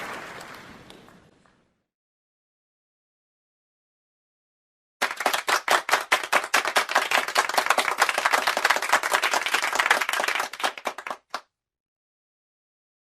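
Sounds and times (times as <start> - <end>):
group of people clapping: 5.0 - 11.5.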